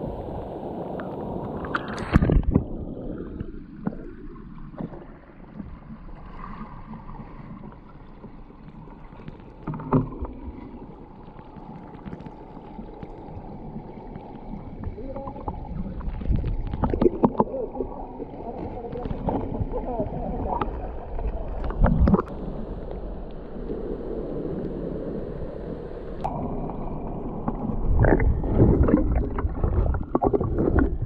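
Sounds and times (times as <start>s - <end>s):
water gurgling over rocks: 0.0s - 31.0s
wind on microphone: 19.1s - 31.0s.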